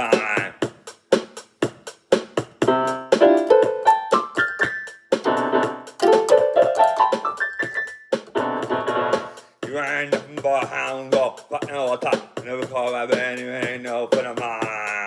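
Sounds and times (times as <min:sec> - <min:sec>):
piano-toned keyboard riff: 0:02.6 - 0:09.4.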